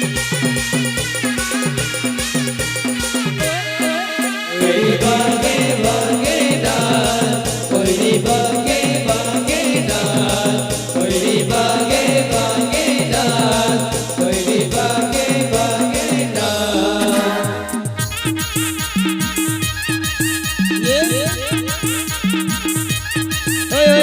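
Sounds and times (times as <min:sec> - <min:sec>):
wavering melody line: 0:03.4 - 0:09.8, 0:11.2 - 0:22.8
fast drumbeat: 0:04.6 - 0:19.7, 0:20.6 - 0:22.7.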